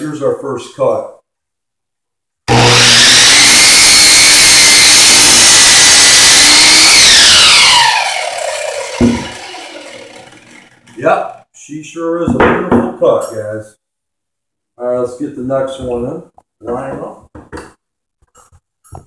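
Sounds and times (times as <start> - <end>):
miter saw running: 2.5 - 11.0
knock: 9.0 - 9.3, 12.2 - 13.0.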